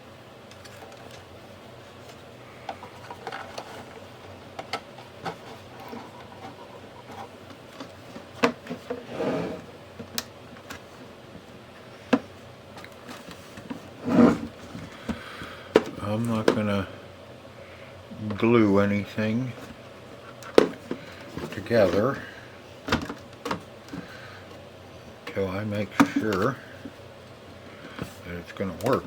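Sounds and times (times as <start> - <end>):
scraping rub: 14.0 - 14.5.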